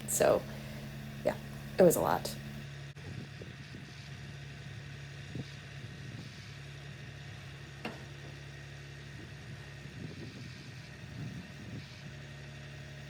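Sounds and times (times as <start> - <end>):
engine idling: 0.0 - 3.0.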